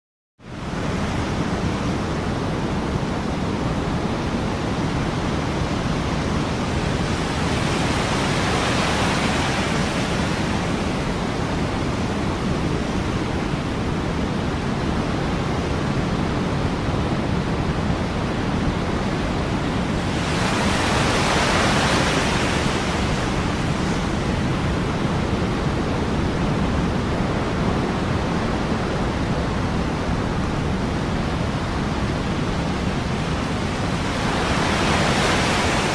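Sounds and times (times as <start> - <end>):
big waves breaking: 0.5 - 35.9
ocean waves washing: 0.5 - 35.9.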